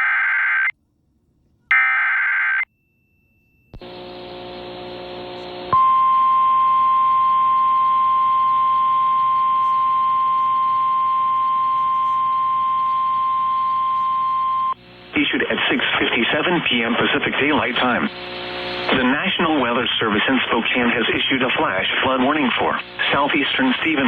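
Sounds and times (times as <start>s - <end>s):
hiss with low hum: 3.8s - 5.8s, 14.7s - 24.0s
steady warning alarm tone: 4.4s - 14.8s.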